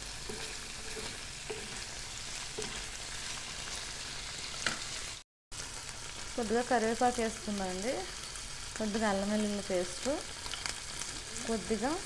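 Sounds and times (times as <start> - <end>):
liver sizzling in oil: 0.0 - 12.0
spoon stirring: 0.1 - 3.1.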